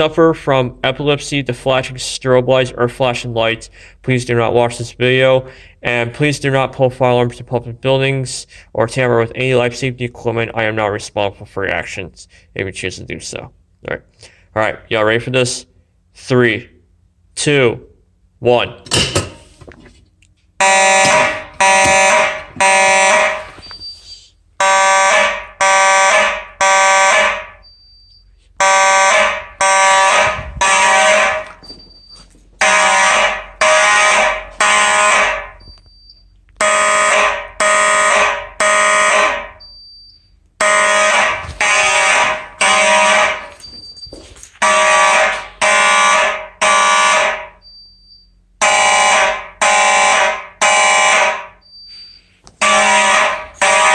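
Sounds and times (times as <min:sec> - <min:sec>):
fire alarm horns buzzing: 0:20.6 - 0:53.9.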